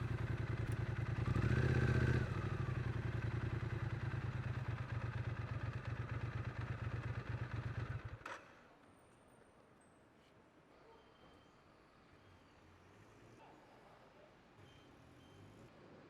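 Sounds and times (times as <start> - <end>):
motorcycle engine at low revs: 0.0 - 8.5.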